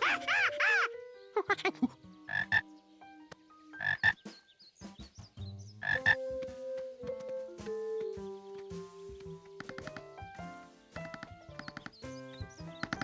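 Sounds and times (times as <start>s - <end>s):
soft background music: 0.0s - 13.0s
cartoon frog croaking: 2.3s - 2.6s, 5.8s - 6.2s.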